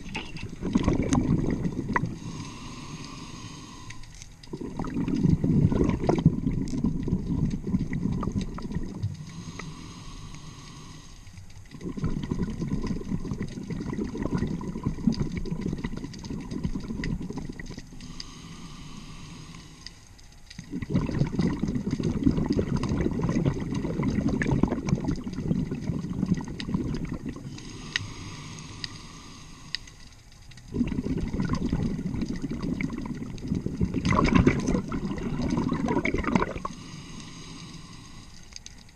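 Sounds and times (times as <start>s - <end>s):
gurgling bubbles exhale: 0.0s - 38.9s
hissing regulator inhale: 1.6s - 5.7s, 8.6s - 12.0s, 17.5s - 20.6s, 25.8s - 30.2s, 34.6s - 38.9s.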